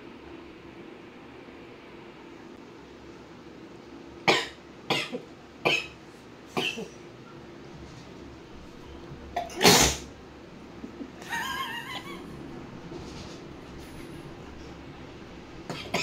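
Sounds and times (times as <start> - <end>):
woman coughing: 4.3 - 6.0, 6.6 - 7.0, 15.7 - 16.0.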